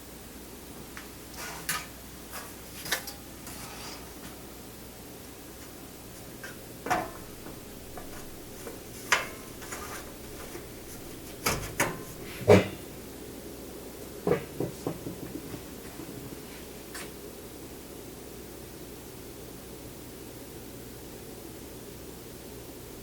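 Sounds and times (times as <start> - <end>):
steady low hum: 5.0 - 18.1.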